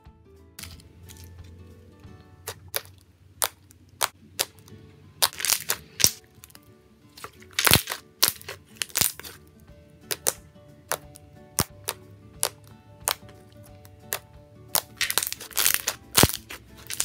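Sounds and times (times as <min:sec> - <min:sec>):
soft background music: 0:00.0 - 0:17.0
slime popping and crackling: 0:00.6 - 0:01.3, 0:02.4 - 0:04.6, 0:05.2 - 0:06.6, 0:07.2 - 0:09.4, 0:10.1 - 0:17.0.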